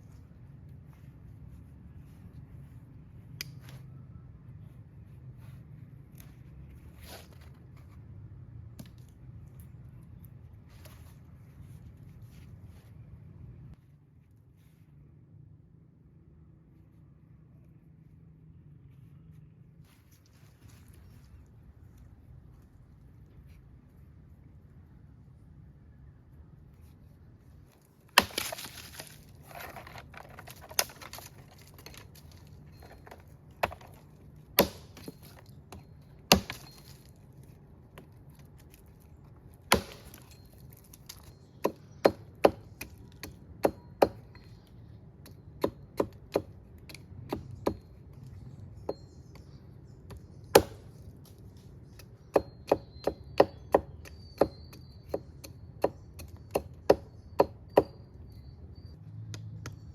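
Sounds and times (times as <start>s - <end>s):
wood splintering crackle: 28.1s - 34.0s
axe strikes chopping wood: 28.2s - 29.2s, 33.6s - 34.0s, 34.6s - 35.4s, 36.3s - 37.0s, 39.7s - 40.3s, 50.6s - 50.9s.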